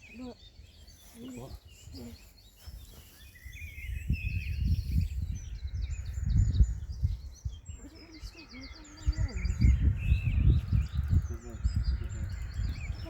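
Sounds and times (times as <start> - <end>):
birds chirping and trilling: 0.0 - 13.0
low rumbling on microphone: 3.6 - 13.0.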